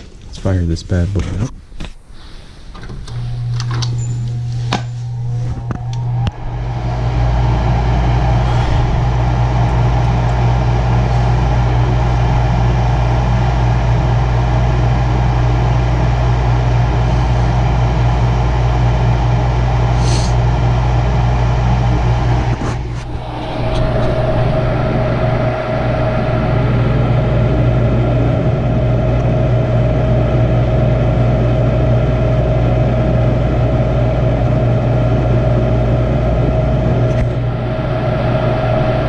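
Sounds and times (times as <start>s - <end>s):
furnace hum: 0.0s - 39.0s
rush of moving air: 5.0s - 13.9s, 22.1s - 30.2s, 36.9s - 39.0s.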